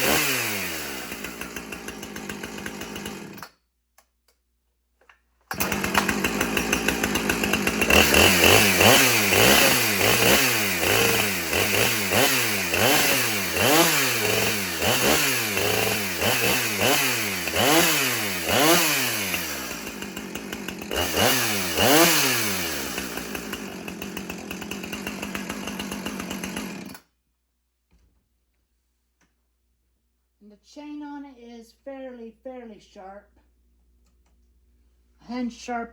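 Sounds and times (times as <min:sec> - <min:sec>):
chainsaw revving: 0:00.0 - 0:03.5, 0:05.5 - 0:27.0.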